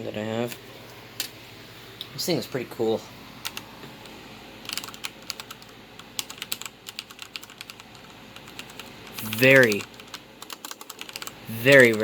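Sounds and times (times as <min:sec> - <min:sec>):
mechanical keyboard typing: 0:03.4 - 0:03.7, 0:04.6 - 0:12.0.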